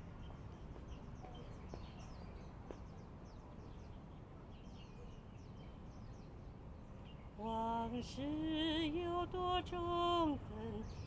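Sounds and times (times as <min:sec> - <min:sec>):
small birds chirping: 0:00.2 - 0:07.4.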